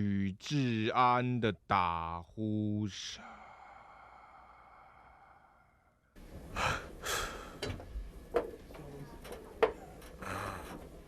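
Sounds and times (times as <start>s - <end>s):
man snoring: 10.2s - 10.8s.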